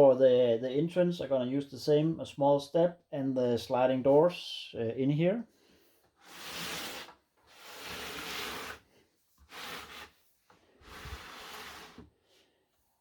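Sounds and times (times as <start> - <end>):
plastic bricks scraping on table: 6.2 - 8.9, 9.5 - 10.2, 10.8 - 12.1.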